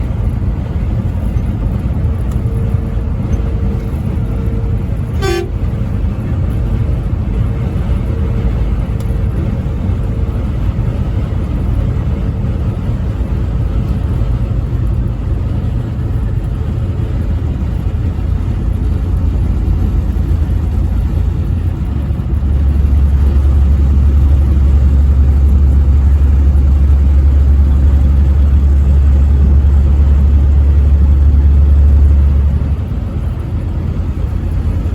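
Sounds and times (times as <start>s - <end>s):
truck engine and road rumble: 0.0s - 34.9s
truck air horn: 5.0s - 5.8s.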